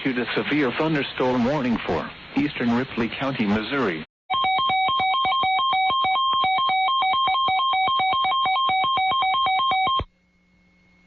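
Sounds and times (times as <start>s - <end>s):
rapid two-pitch alert beeps: 4.3s - 10.1s.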